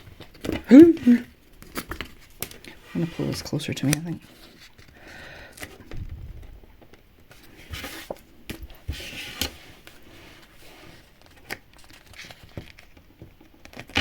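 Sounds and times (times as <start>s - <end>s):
paper rustling: 7.3s - 13.0s.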